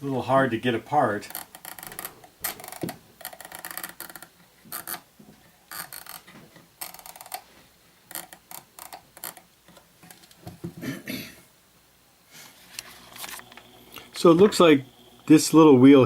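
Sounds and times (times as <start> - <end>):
metronome mechanism clicking and rattling: 1.0 - 5.0, 5.7 - 7.5, 8.1 - 10.4.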